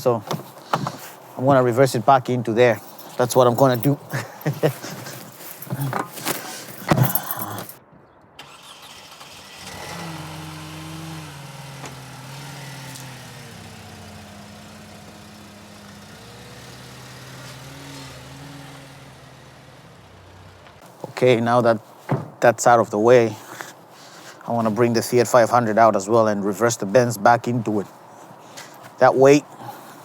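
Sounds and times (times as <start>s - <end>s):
handling clatter: 2.6s - 7.8s
car engine idling: 10.0s - 20.8s.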